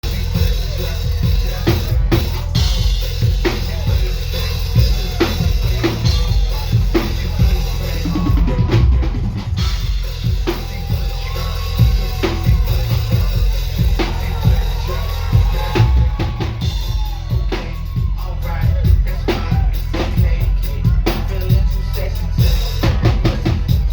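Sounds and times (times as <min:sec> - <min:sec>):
bass drum and snare hits: 0:04.7 - 0:21.7.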